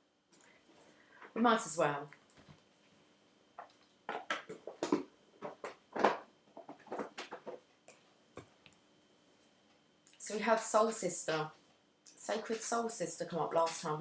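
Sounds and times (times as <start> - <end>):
cards being shuffled by hand: 4.1 - 7.7.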